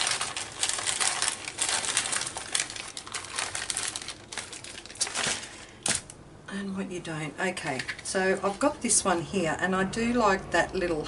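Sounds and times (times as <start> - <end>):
small craft pieces rattling: 0.0 - 6.0.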